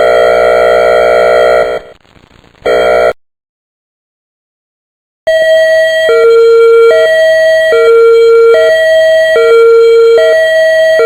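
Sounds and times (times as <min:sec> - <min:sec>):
electronic siren airhorn blast: 0:00.0 - 0:02.0, 0:02.6 - 0:03.2, 0:05.3 - 0:11.0.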